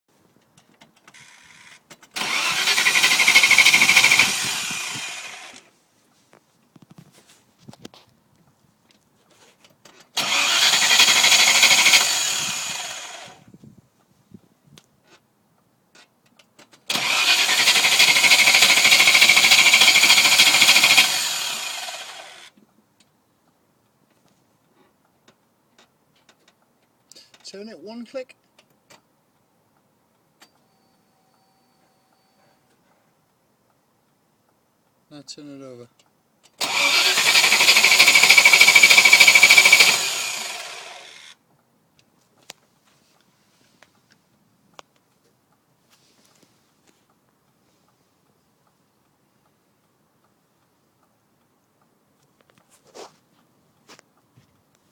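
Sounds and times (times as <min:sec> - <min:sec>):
engine cranking without starting: 0:01.0 - 0:05.7, 0:10.1 - 0:13.4, 0:16.9 - 0:22.5, 0:36.5 - 0:41.4.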